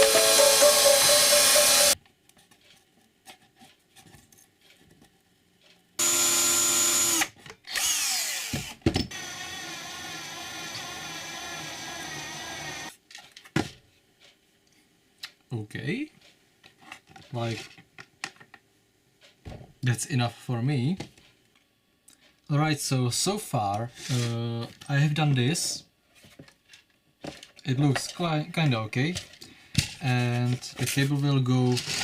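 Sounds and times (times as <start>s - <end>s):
background music: 0.0s - 2.0s
electric power drill running: 0.0s - 2.0s, 6.0s - 12.9s.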